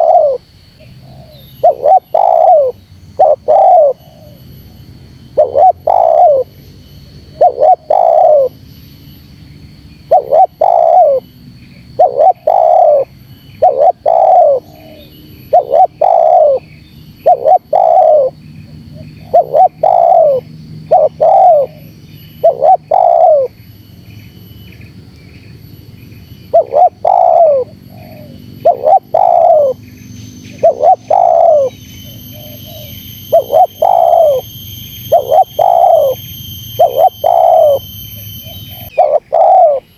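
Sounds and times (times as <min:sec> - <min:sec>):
dove cooing: 0:00.0 - 0:04.4, 0:05.3 - 0:06.5, 0:07.3 - 0:08.6, 0:10.0 - 0:11.3, 0:11.9 - 0:18.4, 0:19.0 - 0:23.6, 0:26.5 - 0:29.8, 0:30.6 - 0:34.5, 0:35.1 - 0:39.9.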